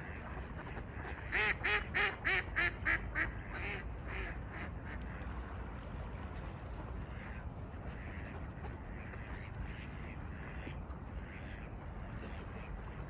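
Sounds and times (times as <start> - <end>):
duck quacking: 1.0 - 4.6.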